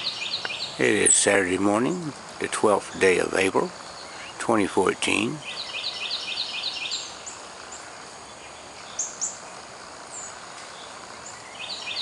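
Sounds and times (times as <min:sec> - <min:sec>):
high bird chirps: 0:00.0 - 0:00.8, 0:05.4 - 0:07.4
bird trilling: 0:00.0 - 0:01.0, 0:05.3 - 0:07.4
steady background hiss: 0:00.0 - 0:12.0.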